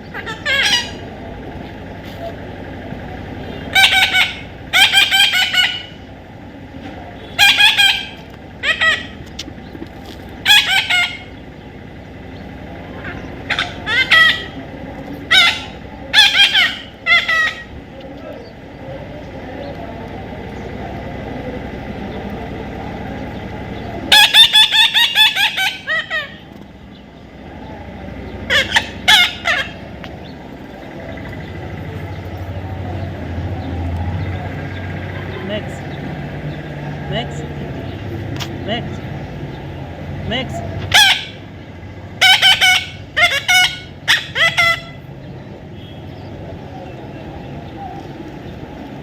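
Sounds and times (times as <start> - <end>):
low steady rumble: 0.0 - 49.0
baby parrot squawking: 0.1 - 1.0, 3.8 - 6.0, 7.4 - 9.2, 10.4 - 11.4, 13.0 - 14.6, 15.3 - 17.8, 24.1 - 26.4, 28.5 - 29.8, 40.8 - 41.4, 42.2 - 45.0.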